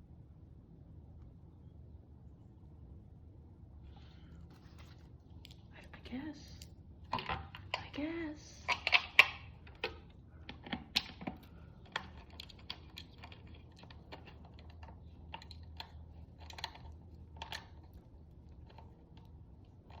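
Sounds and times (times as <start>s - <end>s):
small plastic parts clicking: 8.6s - 20.0s.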